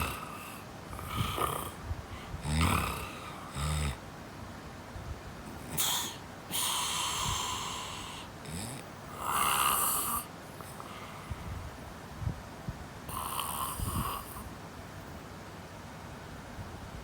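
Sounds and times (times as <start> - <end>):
person snoring: 0.0 - 4.0, 5.5 - 10.9, 13.1 - 14.5.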